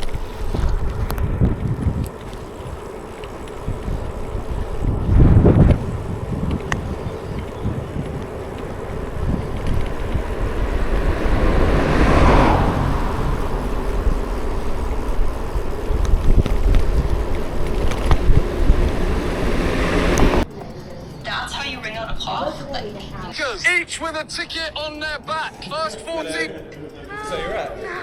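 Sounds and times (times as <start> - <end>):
vehicle passing close by: 0.0 - 20.5
wind buffeting microphone: 0.0 - 20.5
road and traffic rumble: 0.0 - 28.0.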